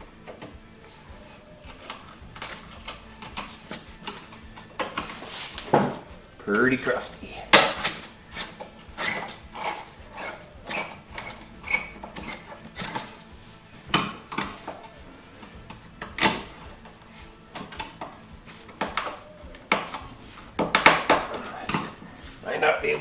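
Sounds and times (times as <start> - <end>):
hand tools clinking on metal: 0.0 - 23.0.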